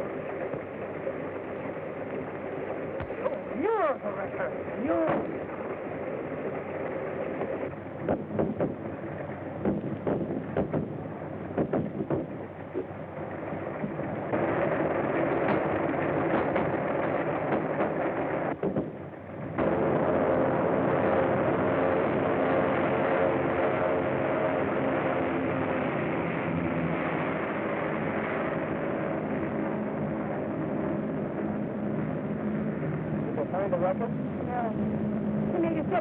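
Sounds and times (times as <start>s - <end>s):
film soundtrack crackling: 0.0s - 21.7s
propeller aeroplane engine: 0.0s - 36.0s.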